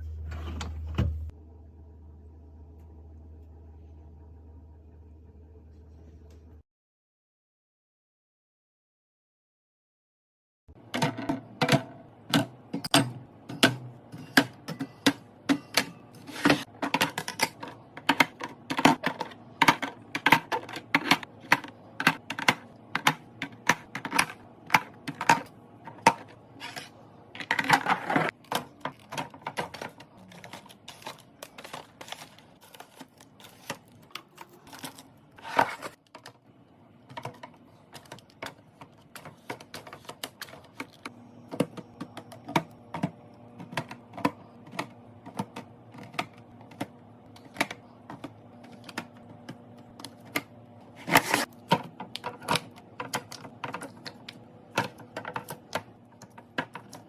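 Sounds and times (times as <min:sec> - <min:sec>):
containers clicking and tapping: 0:10.8 - 0:26.8, 0:27.4 - 0:35.0, 0:37.1 - 0:57.0.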